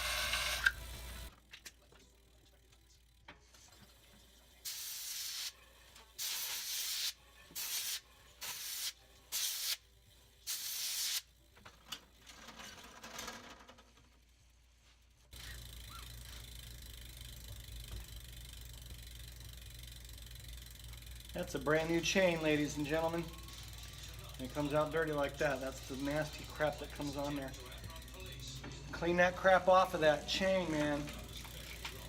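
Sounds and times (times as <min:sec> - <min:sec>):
aerosol spray hissing: 0:06.2 - 0:09.8.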